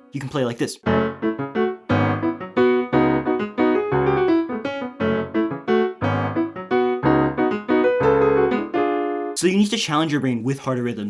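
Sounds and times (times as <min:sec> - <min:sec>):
piano chords and bass line: 0:00.8 - 0:09.4.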